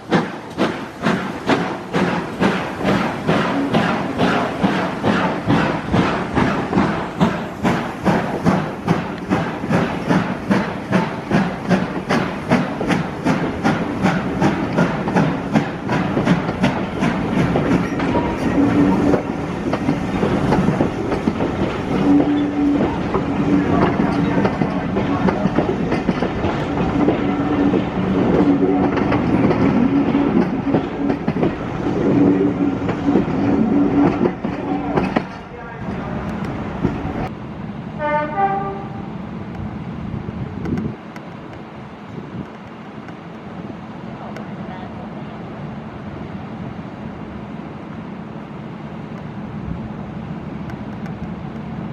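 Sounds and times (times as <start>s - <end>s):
steam hiss: 0.0s - 35.1s
train wheels clicking over joints: 0.0s - 37.3s
steam locomotive exhaust beats: 0.0s - 37.4s
train low hum: 0.0s - 51.9s.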